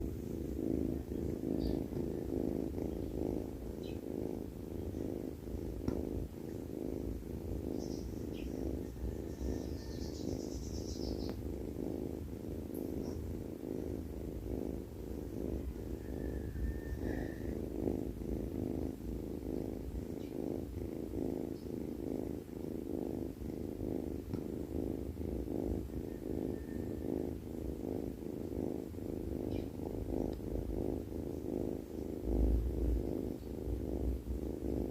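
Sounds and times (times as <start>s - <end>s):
cat snoring: 0.0s - 34.9s.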